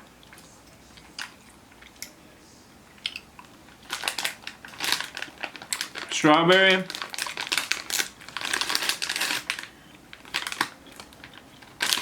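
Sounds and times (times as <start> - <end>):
chewing soft candy: 7.2 - 12.0.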